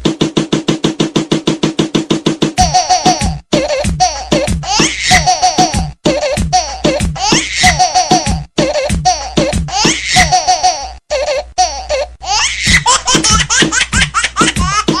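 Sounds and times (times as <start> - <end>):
ringtone music: 2.6 - 10.2
baby laughing: 2.6 - 15.0.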